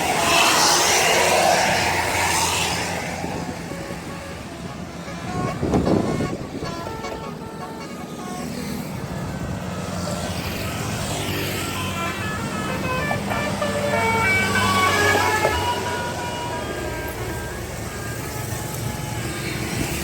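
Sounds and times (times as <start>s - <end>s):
bus engine passing: 0.0s - 20.0s
multi-tone bus horn tune: 3.2s - 9.2s, 10.6s - 20.0s.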